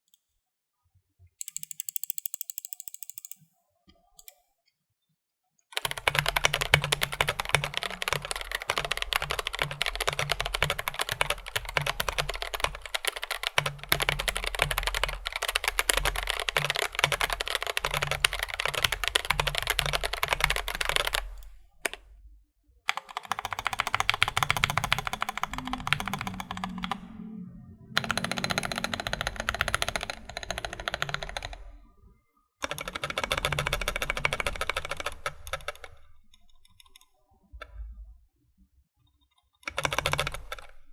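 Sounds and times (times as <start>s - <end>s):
fast keyboard typing: 1.4s - 3.4s, 5.8s - 22.1s, 22.9s - 27.2s, 28.0s - 31.8s, 32.6s - 36.0s, 39.7s - 40.9s.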